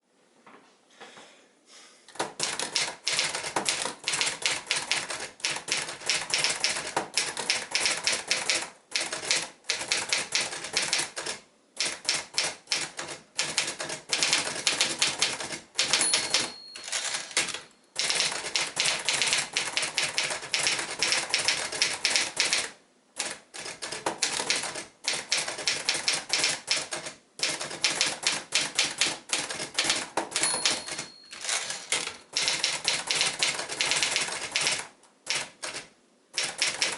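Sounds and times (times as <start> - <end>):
typewriter keystrokes: 2.1 - 36.9
typewriter bell ringing: 15.8 - 18.2, 30.4 - 32.1.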